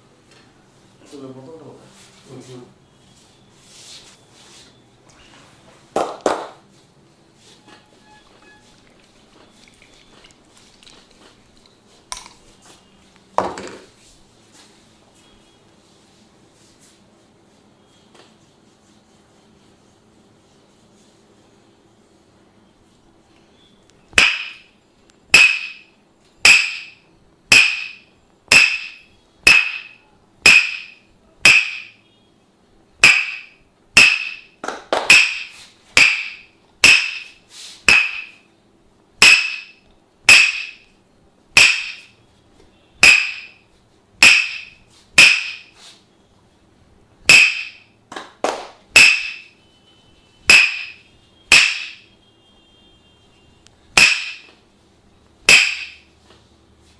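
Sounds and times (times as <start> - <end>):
wooden mallet knocking on wood: 26.5 - 32.0, 44.2 - 45.6, 47.3 - 48.3, 50.5 - 52.0, 54.0 - 54.5.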